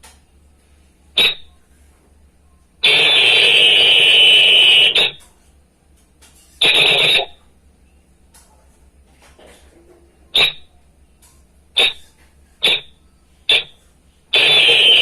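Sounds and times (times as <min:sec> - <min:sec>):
hand whistle blasts: 0:02.9 - 0:05.2, 0:06.6 - 0:07.3, 0:14.4 - 0:15.0.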